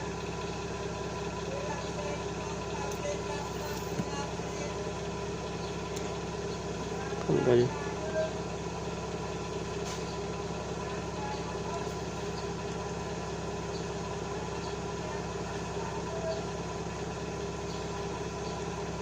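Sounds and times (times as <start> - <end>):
steady mechanical hum: 0.0 - 19.0.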